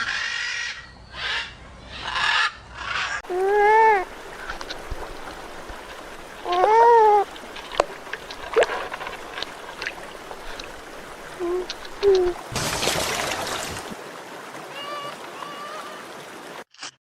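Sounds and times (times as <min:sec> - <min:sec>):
running water trickling: 0:03.2 - 0:16.7.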